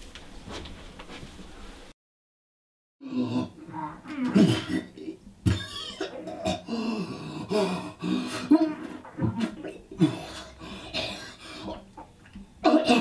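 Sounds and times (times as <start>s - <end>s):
strained vocal sounds: 3.0s - 13.0s
person coughing harshly: 4.3s - 6.7s, 12.6s - 13.0s.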